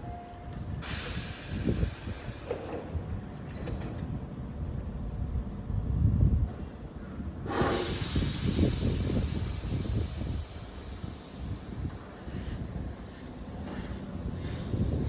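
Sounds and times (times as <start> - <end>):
low train rumble: 0.0 - 15.0
compressed air hiss: 0.8 - 2.8, 7.4 - 15.0.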